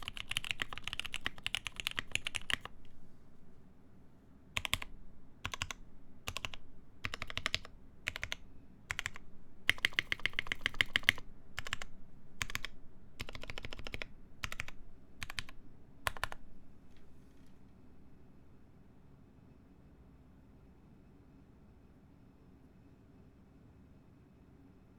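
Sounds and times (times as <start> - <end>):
typing on mechanical keyboard: 0.0 - 2.8, 4.6 - 16.4.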